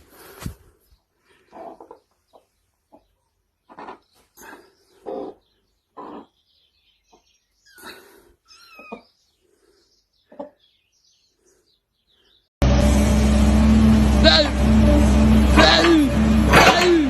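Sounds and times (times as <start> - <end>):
animal calls: 3.7 - 6.5, 7.6 - 9.2
loud steady noise with low hum: 12.6 - 17.0.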